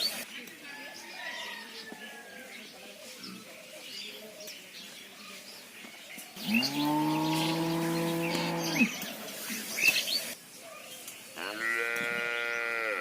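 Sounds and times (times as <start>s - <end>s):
birds chirping faintly: 0.0s - 13.0s
cow mooing: 6.4s - 8.9s, 11.5s - 13.0s.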